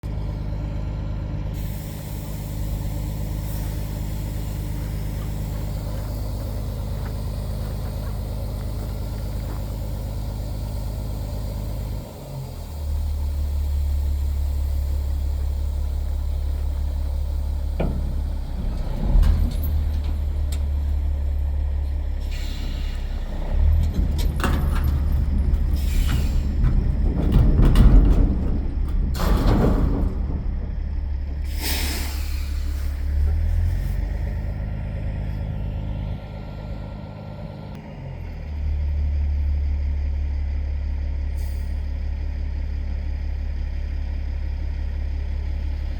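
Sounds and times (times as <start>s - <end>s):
truck engine running: 0.0s - 45.9s
metal clanks and bangs: 17.4s - 21.4s, 23.0s - 33.7s.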